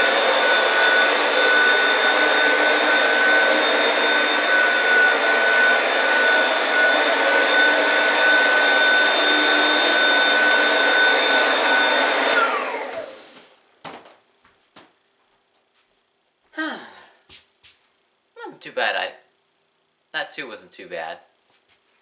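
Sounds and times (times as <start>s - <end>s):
vacuum cleaner motor whine: 0.0s - 13.7s.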